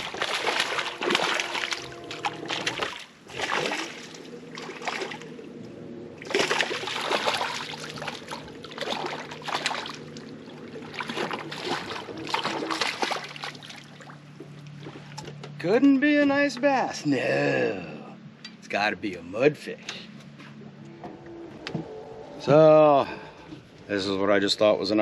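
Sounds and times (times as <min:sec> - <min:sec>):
fish splashing in water: 0:00.0 - 0:05.5, 0:06.2 - 0:15.2
steady low hum: 0:00.0 - 0:25.0.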